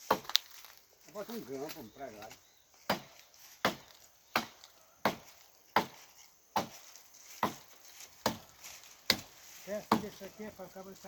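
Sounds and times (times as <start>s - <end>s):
chopping into wood: 0.0s - 0.5s, 2.8s - 6.8s, 7.4s - 8.5s, 9.1s - 9.3s, 9.9s - 10.2s.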